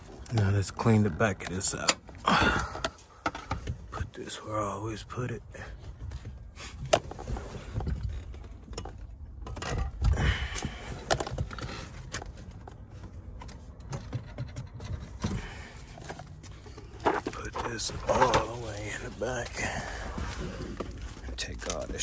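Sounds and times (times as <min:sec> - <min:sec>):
items being handled and set down: 0:05.9 - 0:22.0.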